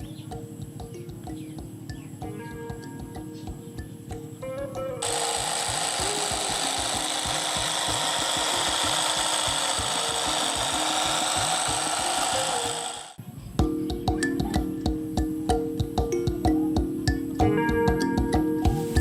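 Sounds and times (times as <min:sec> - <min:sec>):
background music with beat: 0:00.0 - 0:05.0, 0:13.6 - 0:19.0
power tool whirring: 0:05.0 - 0:13.2.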